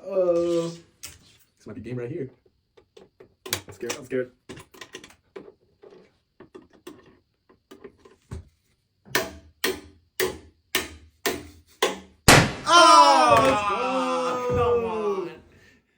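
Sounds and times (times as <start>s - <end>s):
toy hammer knocking pegs: 9.1s - 12.1s
long falling cry: 12.6s - 15.6s.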